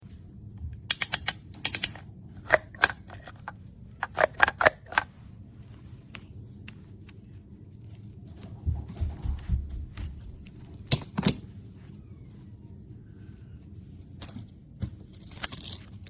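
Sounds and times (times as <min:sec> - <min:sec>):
wooden toy pieces clicking: 0:00.9 - 0:05.1.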